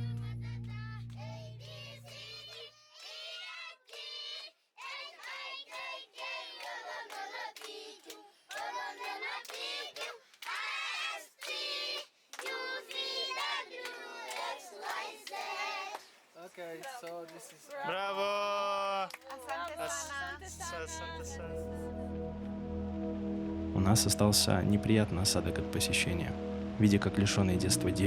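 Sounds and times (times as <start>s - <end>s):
children singing together: 0.0s - 16.0s.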